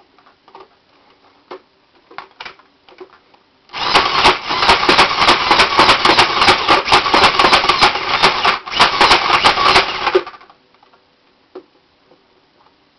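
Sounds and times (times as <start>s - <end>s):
toy blaster firing rapid bursts: 3.7s - 10.4s.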